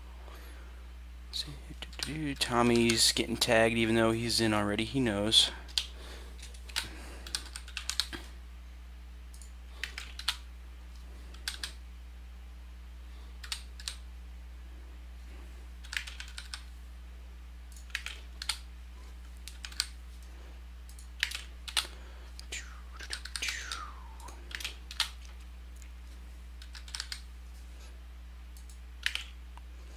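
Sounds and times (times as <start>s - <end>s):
low electrical hum: 0.0s - 29.9s
keyboard typing clicks: 6.6s - 8.2s, 9.3s - 10.4s, 11.3s - 11.8s, 13.4s - 14.0s, 15.8s - 16.6s, 17.7s - 18.6s, 19.4s - 20.0s, 20.9s - 21.9s, 23.1s - 23.5s, 24.2s - 25.4s, 26.6s - 27.2s, 28.6s - 29.4s.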